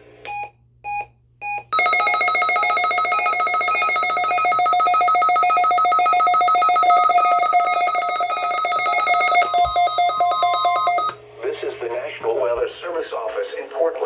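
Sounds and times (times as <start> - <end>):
steady alarm tone: 1.7 - 11.2
trilling electronic alarm tone: 1.7 - 11.2.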